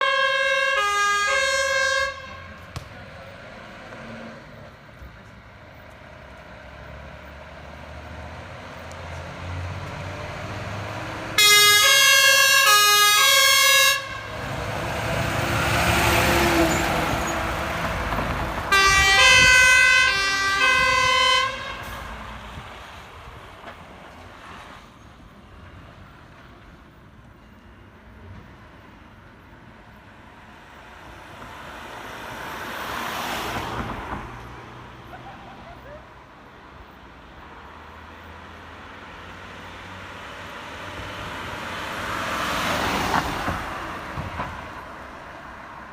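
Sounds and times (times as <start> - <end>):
two-tone emergency sirens: 0.0 - 2.6, 11.3 - 14.4, 18.7 - 22.0
road noise: 0.0 - 45.9
heavy vehicle passing: 1.4 - 27.0, 27.8 - 45.9.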